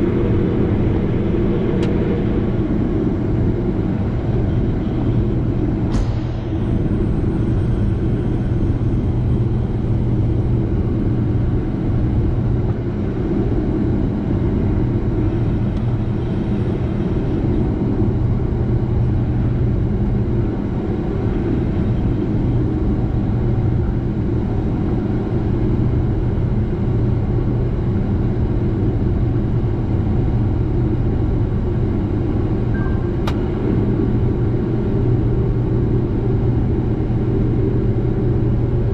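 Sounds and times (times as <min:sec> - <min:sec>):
combine harvester droning: 0:00.0 - 0:38.9
short high tone: 0:32.7 - 0:33.2.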